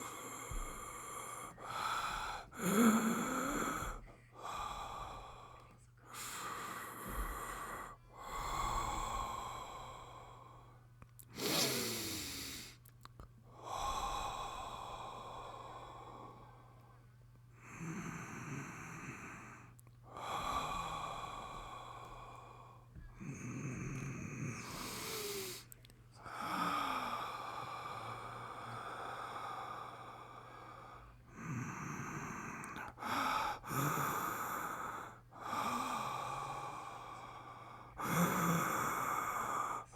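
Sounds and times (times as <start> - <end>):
man breathing deeply: 0.0 - 12.8, 13.5 - 16.8, 17.6 - 39.9
sighing exhales: 11.3 - 12.8.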